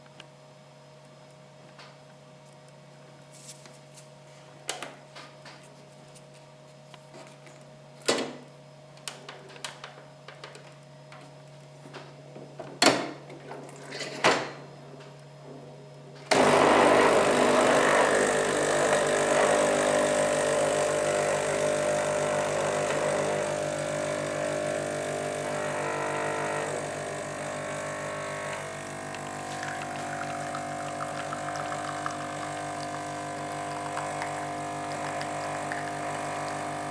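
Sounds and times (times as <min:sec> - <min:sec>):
coffee machine pump droning: 0:16.3 - 0:36.9.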